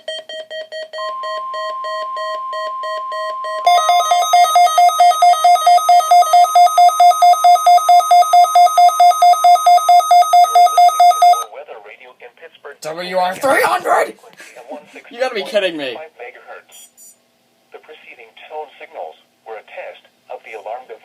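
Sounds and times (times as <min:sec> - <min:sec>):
louder higher beeping alarm: 0:00.0 - 0:11.5
steady warning alarm tone: 0:00.0 - 0:11.5.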